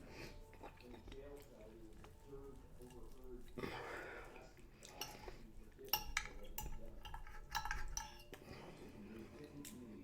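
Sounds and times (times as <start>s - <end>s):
cutlery clinking on a plate: 4.8s - 8.8s.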